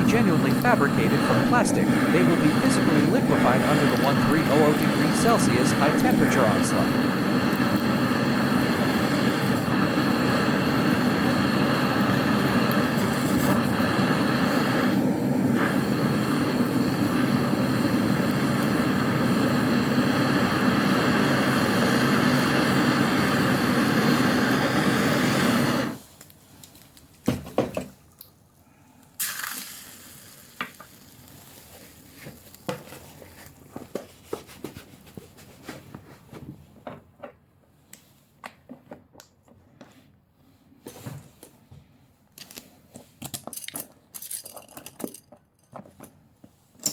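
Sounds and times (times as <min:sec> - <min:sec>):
torch flame burning: 0:00.0 - 0:27.0, 0:29.1 - 0:35.1.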